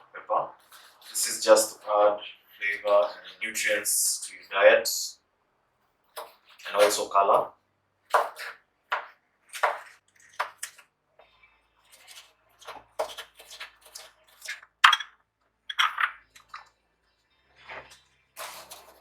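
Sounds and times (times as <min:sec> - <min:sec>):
knife slicing pepper on board: 0:08.1 - 0:10.8.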